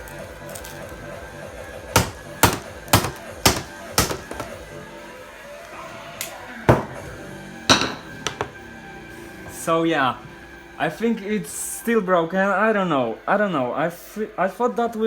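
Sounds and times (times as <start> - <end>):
background music: 0.0 - 15.0
hard thwacking blows: 2.0 - 4.6.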